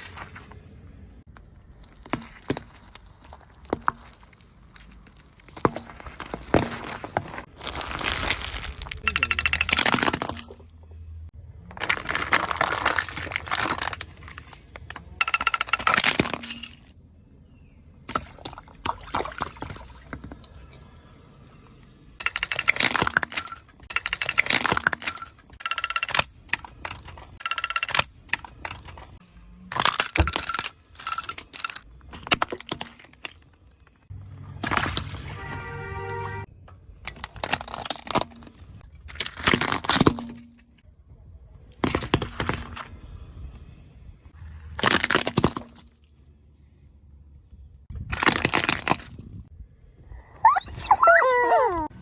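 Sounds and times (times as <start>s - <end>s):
tyre crushing crackling objects: 1.8s - 9.0s.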